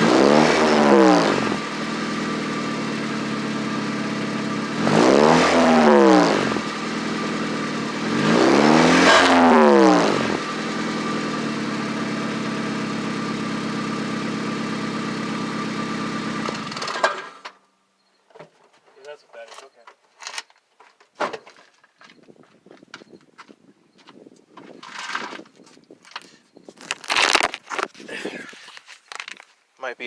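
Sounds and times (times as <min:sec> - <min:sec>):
vehicle engine idling with exhaust leak: 0:00.0 - 0:08.8, 0:09.8 - 0:17.3
engine revving: 0:00.0 - 0:17.4.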